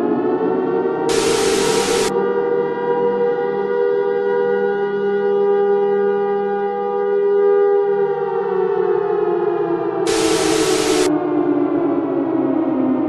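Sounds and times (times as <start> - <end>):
warning siren winding down: 1.1 - 2.3, 10.1 - 13.0.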